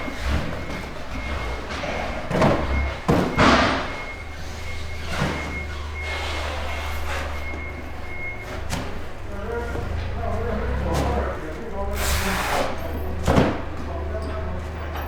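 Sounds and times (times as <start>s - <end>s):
heavy thuds and bangs: 0.0s - 4.3s
low engine hum: 7.4s - 15.0s.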